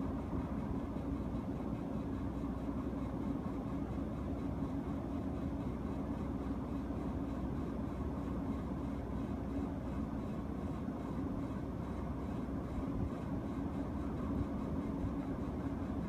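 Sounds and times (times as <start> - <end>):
air conditioner air rush and drone: 0.0 - 3.4.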